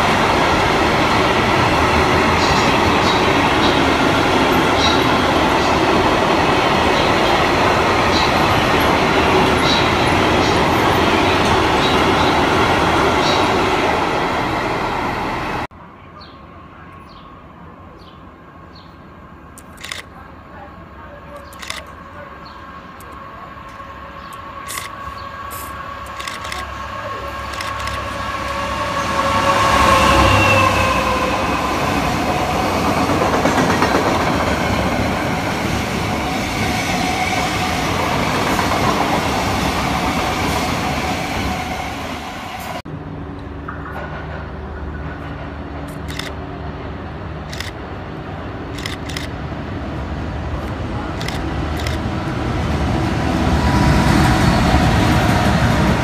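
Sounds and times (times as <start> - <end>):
train wagons rumbling and clattering: 0.0 - 15.7, 16.7 - 56.0
diesel locomotive engine hum: 0.0 - 56.0
scattered clicks: 19.6 - 20.1, 21.3 - 22.0, 24.3 - 25.0, 26.0 - 26.7, 27.5 - 28.1, 45.9 - 46.4, 47.5 - 47.8, 48.7 - 49.4, 50.6 - 52.0.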